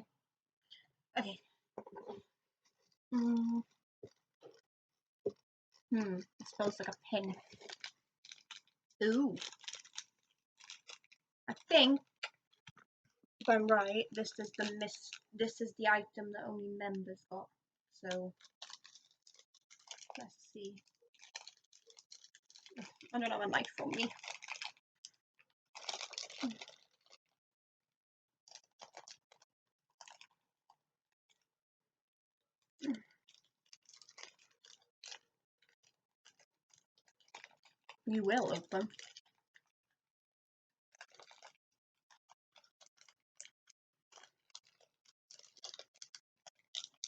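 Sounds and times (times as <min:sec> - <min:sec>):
plastic packaging crinkling: 0:06.0 - 0:12.8, 0:13.4 - 0:15.3, 0:18.1 - 0:27.2, 0:28.5 - 0:30.4, 0:32.8 - 0:39.6, 0:40.9 - 0:47.0.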